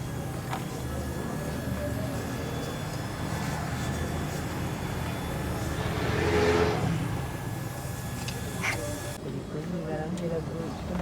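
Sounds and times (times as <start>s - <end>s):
car engine running: 4.2s - 9.2s.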